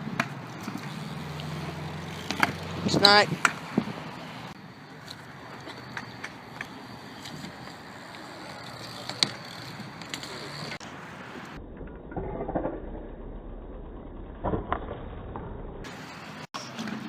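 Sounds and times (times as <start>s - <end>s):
bike tyres rolling on concrete: 0.0s - 17.0s
low rumble: 11.6s - 15.9s.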